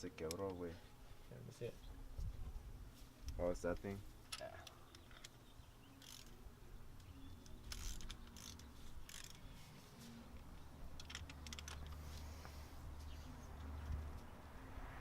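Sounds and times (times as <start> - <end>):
ratchet wrench clicking: 6.0 - 6.4, 7.4 - 9.4
metal clicks: 10.9 - 12.0.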